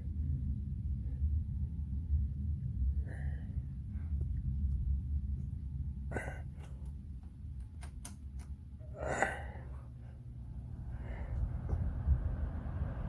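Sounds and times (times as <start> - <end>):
box fan running: 0.0 - 13.0
small clicks: 6.8 - 8.6.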